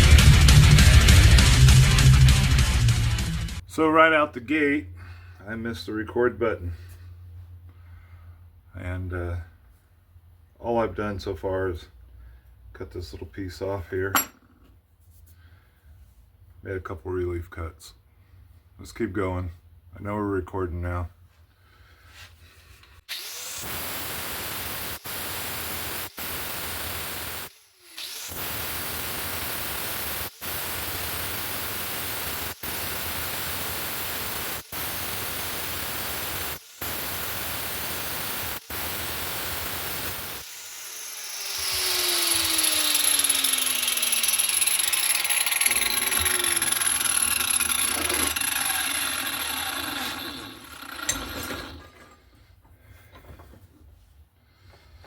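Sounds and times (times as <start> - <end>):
power tool cutting steel: 23.1 - 52.3.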